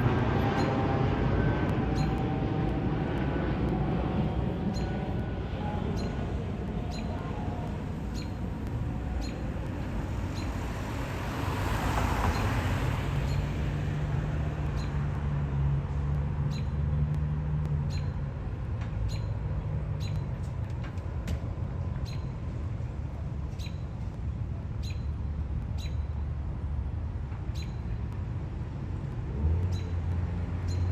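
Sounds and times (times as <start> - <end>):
vehicle passing: 0.0 - 23.5
road traffic rumble: 0.0 - 30.9.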